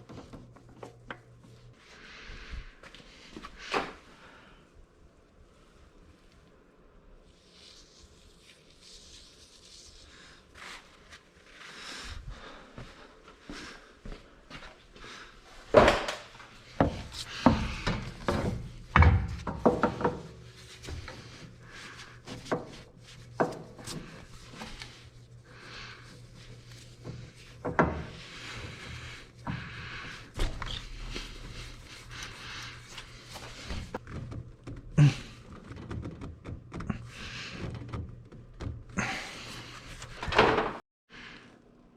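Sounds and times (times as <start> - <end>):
rubbing and scraping: 16.8 - 40.2.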